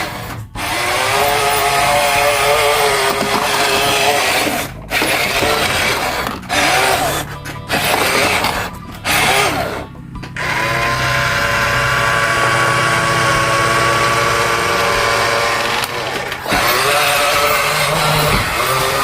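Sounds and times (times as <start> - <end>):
toy electric motor whining: 0.0 - 19.0.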